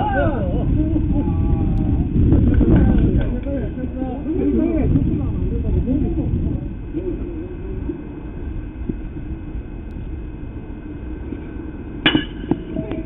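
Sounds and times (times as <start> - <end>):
low outdoor rumble: 0.0 - 13.0
sharp ringing crack: 12.0 - 12.7.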